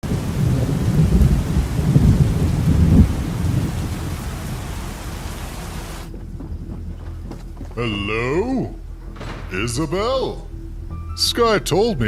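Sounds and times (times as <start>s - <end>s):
steady rain: 0.0s - 8.9s
thunder rumbling: 0.0s - 10.8s.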